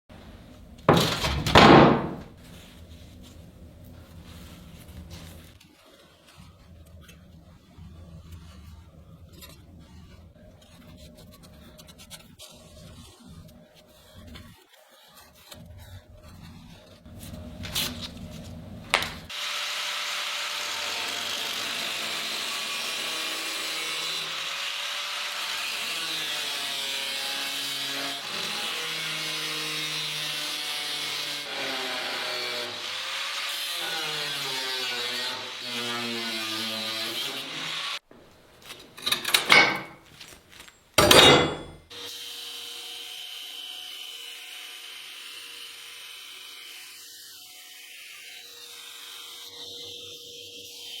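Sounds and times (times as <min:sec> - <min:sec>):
power tool grinding steel: 0:19.3 - 0:38.0.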